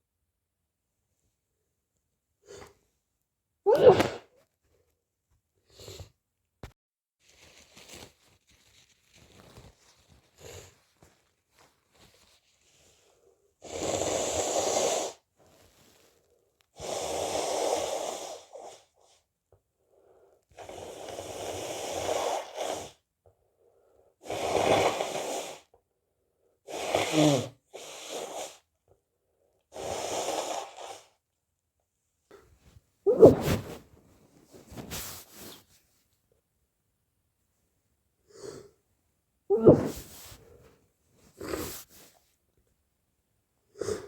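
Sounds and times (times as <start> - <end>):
person blowing nose: 3.7 - 4.3, 13.6 - 16.0, 16.8 - 18.8, 20.6 - 23.0, 24.2 - 25.7, 26.7 - 28.7, 29.7 - 31.2, 33.1 - 33.8, 34.7 - 35.7, 39.5 - 40.5, 41.4 - 42.1.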